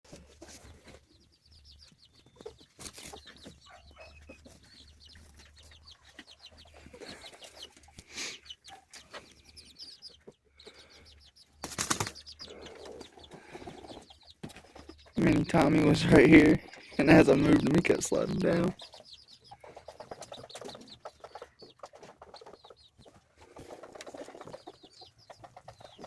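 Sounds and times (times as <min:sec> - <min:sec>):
chickens clucking and trilling: 0:00.1 - 0:26.0
chickens shuffling on a roost: 0:00.1 - 0:26.0
wing flapping: 0:11.6 - 0:14.8.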